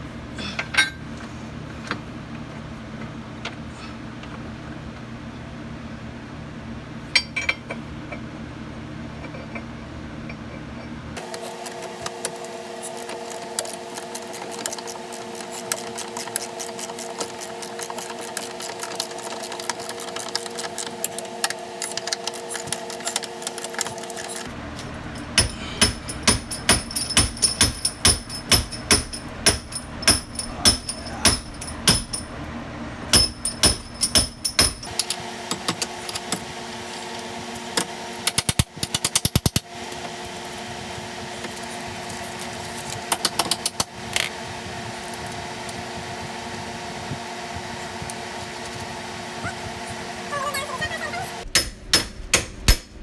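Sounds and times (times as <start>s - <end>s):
impact wrench hammering: 13.0s - 32.4s, 33.1s - 36.5s, 37.8s - 39.7s, 51.4s - 53.0s
sharp metallic knocks: 25.0s - 32.4s, 33.1s - 35.0s, 51.5s - 53.0s.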